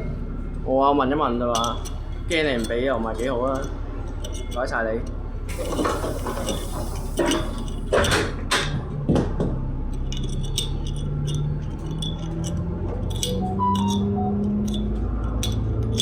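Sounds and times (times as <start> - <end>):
bus engine hum: 5.2 - 16.0
air hiss: 5.5 - 7.8
knocks and rattles: 5.5 - 16.0.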